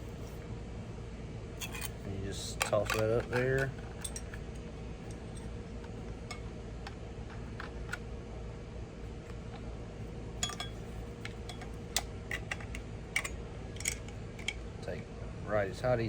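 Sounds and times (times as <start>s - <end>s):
steady low hum: 0.0s - 16.0s
metallic clicks of parts handled: 1.6s - 8.0s, 10.4s - 14.6s.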